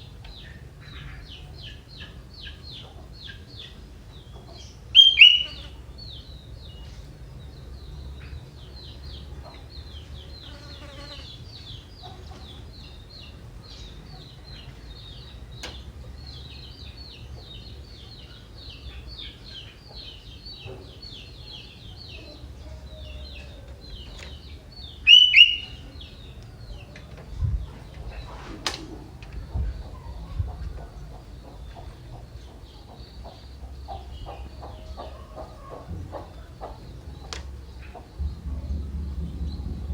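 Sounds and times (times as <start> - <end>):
bird chattering song: 0.0 - 28.4, 29.0 - 39.9
bird two-note whistle: 5.0 - 5.6.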